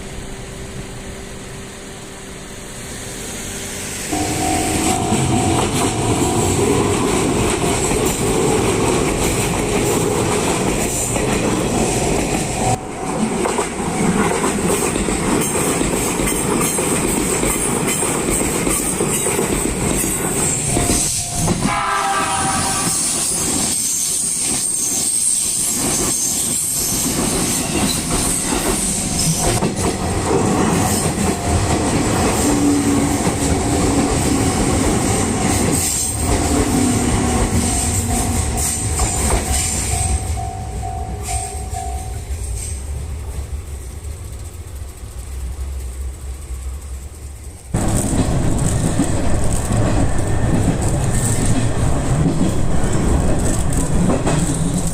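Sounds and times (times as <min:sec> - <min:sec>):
electric train passing: 0:00.0 - 0:54.9
train horn blast: 0:04.1 - 0:07.4, 0:20.9 - 0:23.4
wheels clacking over rail joints: 0:04.8 - 0:40.5, 0:47.5 - 0:54.9.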